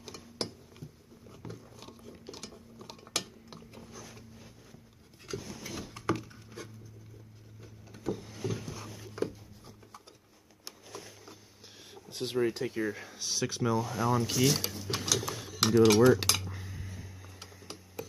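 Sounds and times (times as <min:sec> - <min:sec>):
metal bolts and plate clicking: 0:14.5 - 0:16.5.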